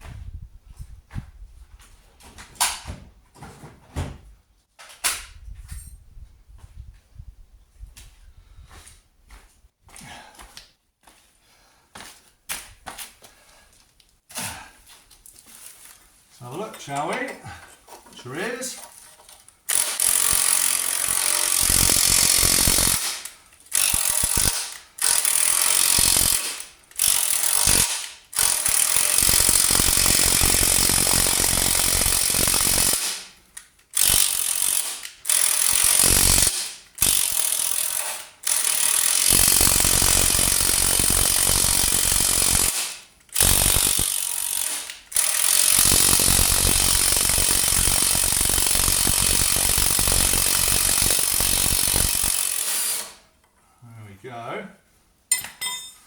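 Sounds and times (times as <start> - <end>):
pneumatic impact wrench hammering: 19.7 - 53.2.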